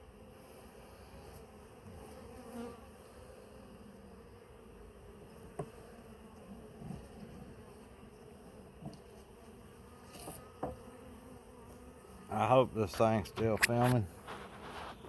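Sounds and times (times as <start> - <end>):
honeybees buzzing: 0.0 - 15.0
light clicks of hive parts: 12.9 - 15.0.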